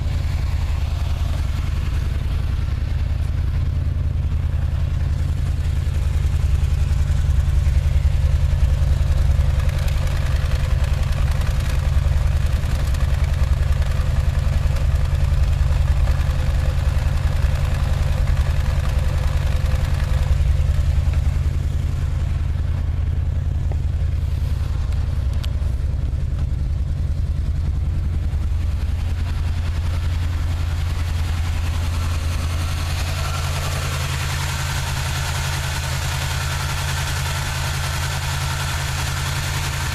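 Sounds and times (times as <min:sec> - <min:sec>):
engine running with misfire: 0:00.0 - 0:39.9.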